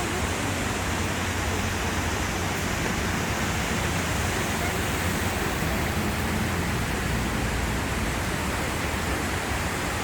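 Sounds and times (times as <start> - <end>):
waterfall roaring: 0.0 - 10.0.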